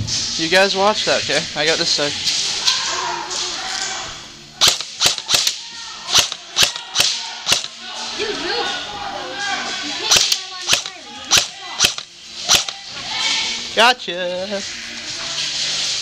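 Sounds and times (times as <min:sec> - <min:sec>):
airsoft gun shots: 0:04.6 - 0:07.8, 0:10.1 - 0:12.8
faint voices: 0:05.2 - 0:13.8.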